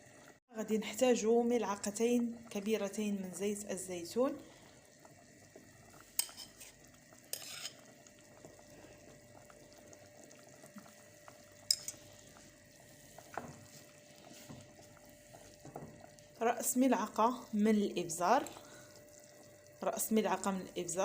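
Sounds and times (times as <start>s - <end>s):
spoon clinking against dishes: 11.7s - 12.0s.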